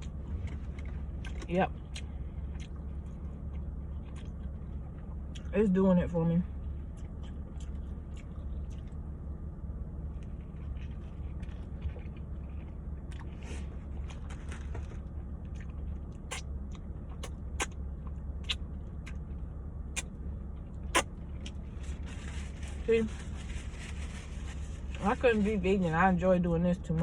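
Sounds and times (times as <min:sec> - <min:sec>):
wet chewing and mouth smacks: 0:00.0 - 0:05.6, 0:06.6 - 0:09.1, 0:10.2 - 0:14.4, 0:15.3 - 0:19.4
steady low hum: 0:00.0 - 0:27.0.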